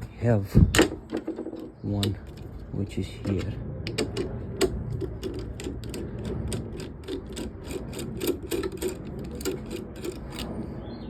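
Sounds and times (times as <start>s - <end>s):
socket ratchet clicking: 3.9s - 10.6s.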